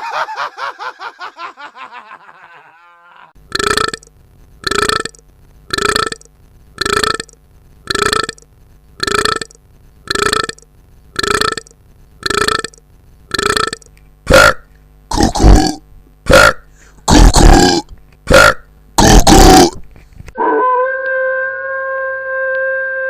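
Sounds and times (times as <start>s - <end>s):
guttural burp-like vocal sound: 3.5s - 8.4s, 9.0s - 10.6s, 11.2s - 19.8s.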